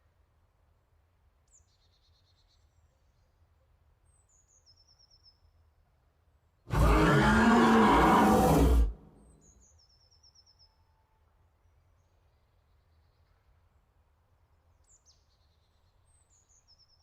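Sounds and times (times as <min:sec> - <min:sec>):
bear growling roar: 0:06.7 - 0:09.1.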